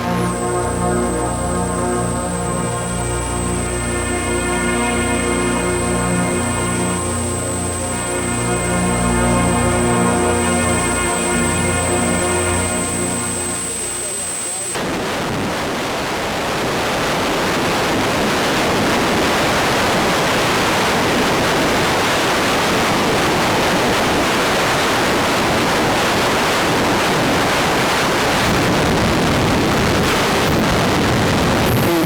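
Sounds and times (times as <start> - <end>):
dark ambient noise music: 0.0 - 14.8.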